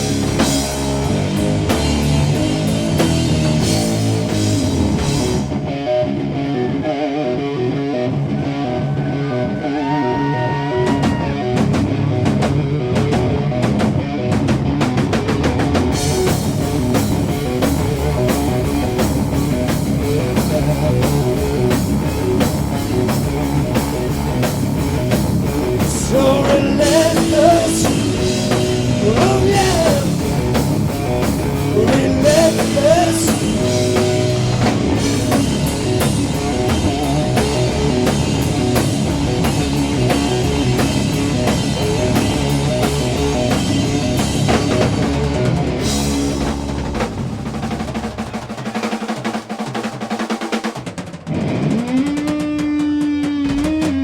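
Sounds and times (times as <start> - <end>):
metal band playing: 0.0 - 54.0.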